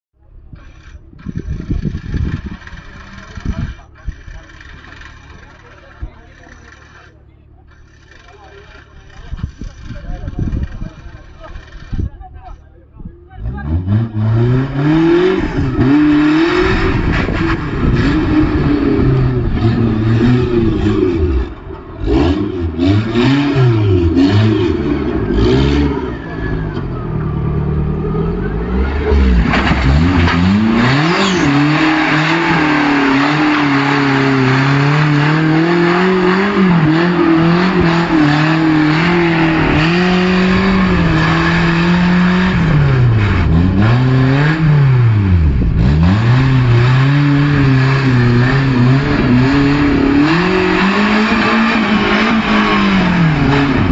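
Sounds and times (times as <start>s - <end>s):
engine revving hard: 13.4s - 53.9s.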